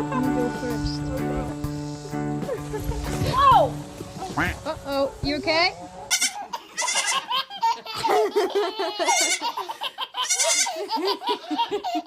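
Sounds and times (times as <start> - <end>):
baby laughing: 6.1 - 12.0.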